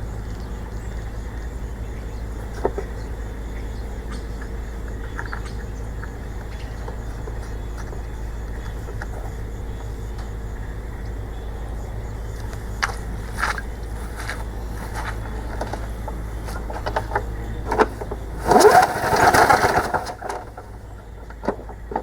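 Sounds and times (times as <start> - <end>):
lawn mower engine running: 0.0 - 22.0
engine knock: 11.8 - 22.0.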